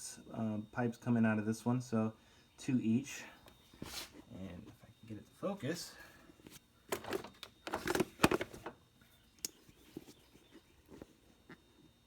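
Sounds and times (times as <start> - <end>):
rustles and scrapes: 3.7 - 4.3, 9.6 - 11.9.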